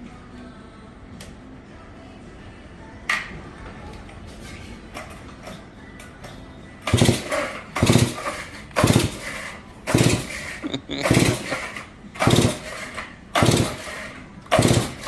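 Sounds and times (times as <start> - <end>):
chainsaw pull-start turning over: 6.9 - 15.0.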